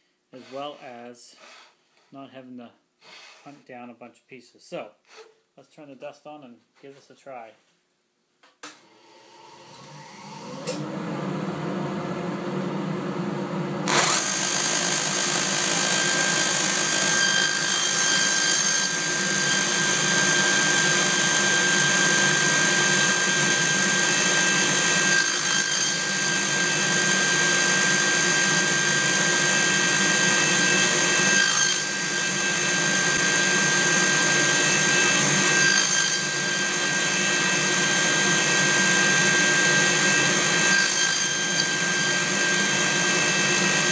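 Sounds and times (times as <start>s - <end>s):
saw cutting wood pieces: 0.4s - 1.8s, 13.9s - 43.9s
table saw motor running: 13.8s - 43.9s.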